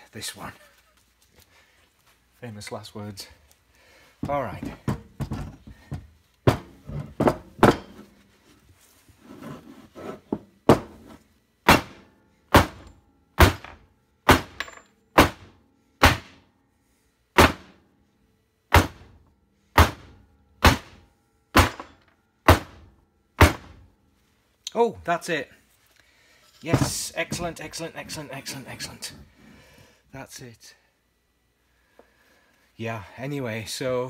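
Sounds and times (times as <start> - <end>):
metal part banging on wooden countertop: 4.6 - 8.0, 14.5 - 14.9.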